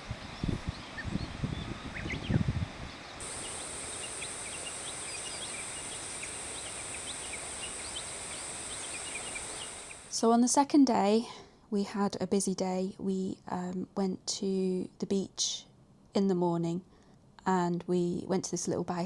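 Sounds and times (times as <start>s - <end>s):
high-pitched insect drone: 3.2s - 10.2s
short insect chirps: 3.2s - 10.2s.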